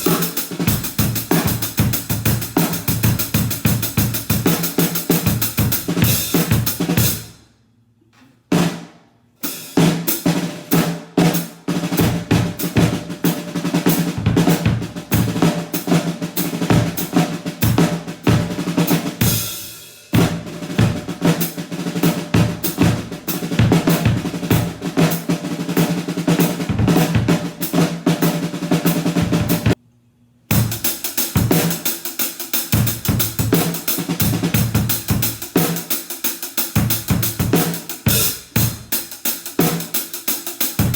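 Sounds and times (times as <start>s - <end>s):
snare drum: 0.0s - 7.3s, 8.5s - 29.8s, 30.5s - 40.9s
cymbals: 0.0s - 7.4s.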